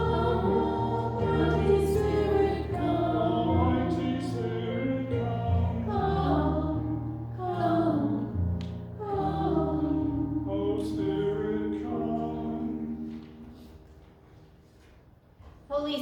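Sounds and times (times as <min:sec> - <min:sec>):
group singing a hymn: 0:00.0 - 0:13.8.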